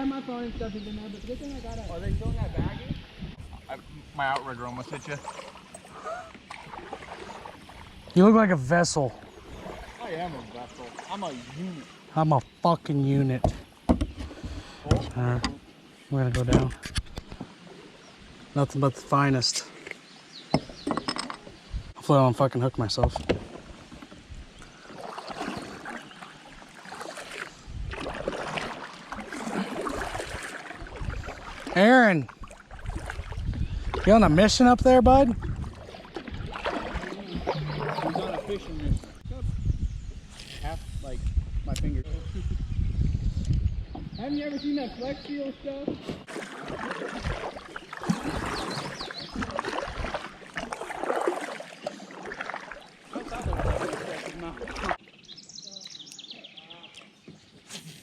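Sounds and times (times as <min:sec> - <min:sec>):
river water splashing around kayak: 0:00.0 - 0:39.3, 0:44.2 - 0:58.0
light knocks against hull: 0:13.4 - 0:15.6, 0:20.5 - 0:21.5, 0:23.0 - 0:24.2.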